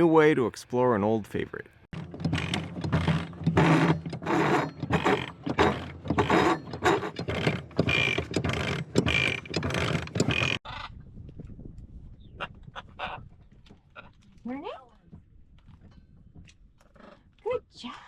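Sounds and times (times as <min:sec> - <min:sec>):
mechanical clattering and rattling: 0:01.9 - 0:10.6.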